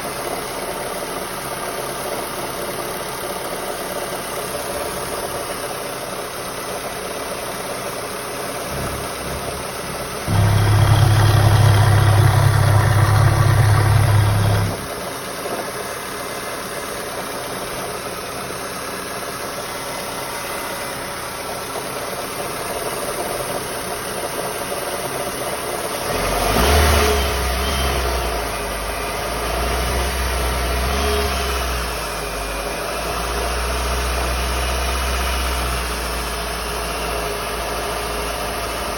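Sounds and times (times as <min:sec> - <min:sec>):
engine knock: 0:00.1 - 0:26.1
car engine running: 0:06.6 - 0:15.4.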